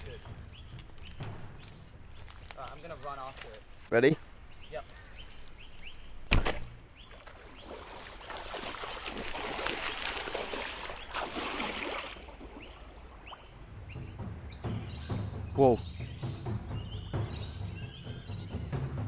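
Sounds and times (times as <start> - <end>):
sharp knock: 6.3 - 6.8
splashing through shallow water: 6.3 - 13.6.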